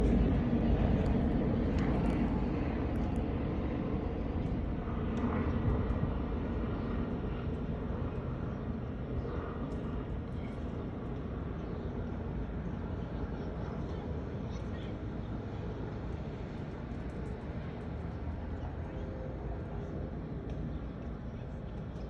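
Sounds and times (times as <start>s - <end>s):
helicopters flying over: 0.0s - 22.0s.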